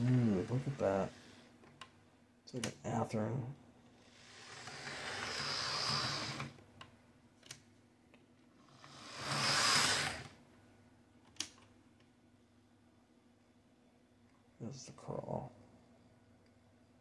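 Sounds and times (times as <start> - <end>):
model train motor whirring: 4.0 - 6.5, 8.6 - 10.4.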